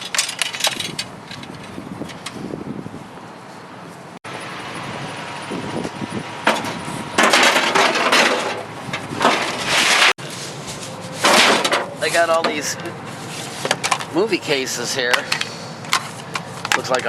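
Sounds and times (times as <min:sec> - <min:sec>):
rummaging through junk: 0:00.0 - 0:02.2, 0:06.4 - 0:14.3
hard objects clattering: 0:07.2 - 0:10.2.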